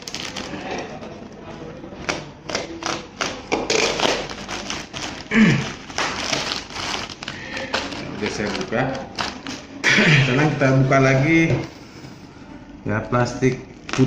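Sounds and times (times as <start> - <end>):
plastic crinkling and rustling: 0.0 - 9.8, 13.7 - 14.0
plastic ripping: 0.0 - 9.8, 13.7 - 14.0.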